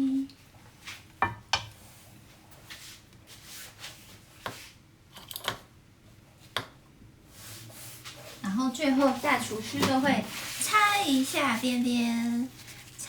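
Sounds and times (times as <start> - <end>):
soft rustling: 7.3 - 13.0.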